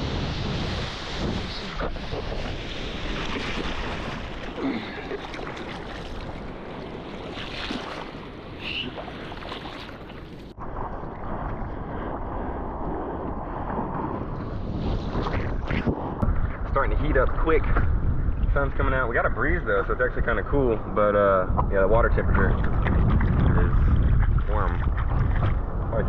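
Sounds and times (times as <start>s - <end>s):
ocean surf washing: 0.0s - 21.0s
wind buffeting microphone: 0.0s - 26.0s.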